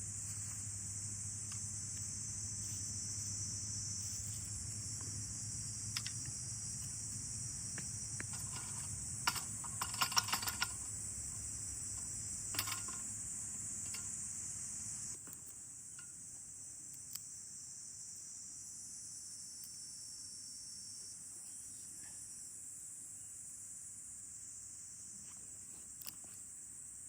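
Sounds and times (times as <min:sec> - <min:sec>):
high-pitched insect chorus: 0:00.0 - 0:27.0
small clicks and clinks: 0:05.9 - 0:06.9, 0:07.7 - 0:13.2, 0:13.8 - 0:14.2, 0:25.9 - 0:26.4.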